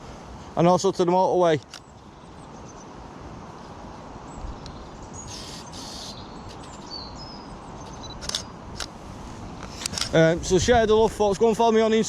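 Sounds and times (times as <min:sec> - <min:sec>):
outdoor background noise: 0:00.0 - 0:12.0
harsh scratchy bird calls: 0:04.4 - 0:08.6
short high bird chirps: 0:04.7 - 0:08.2.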